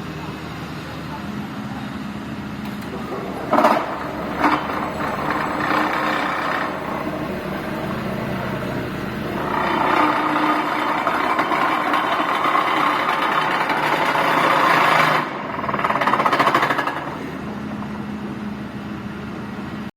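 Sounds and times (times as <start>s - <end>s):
vibratory pile driver rattling: 2.6s - 17.5s.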